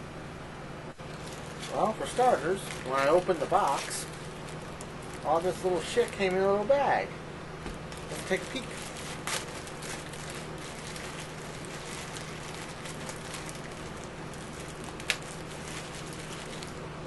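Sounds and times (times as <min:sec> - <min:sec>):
steady hiss and low hum: 0:00.0 - 0:17.0
plastic bag crinkling: 0:01.0 - 0:06.8, 0:07.7 - 0:17.0.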